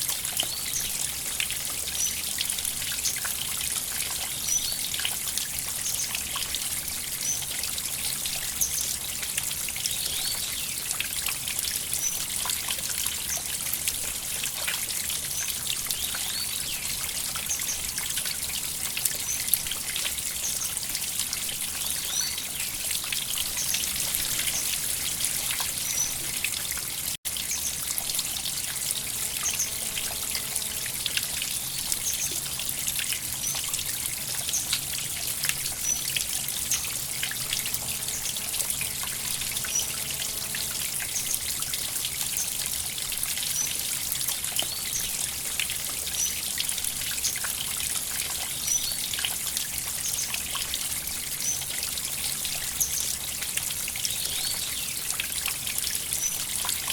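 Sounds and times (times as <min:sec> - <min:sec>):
river water trickling and splashing: 0:00.0 - 0:56.9.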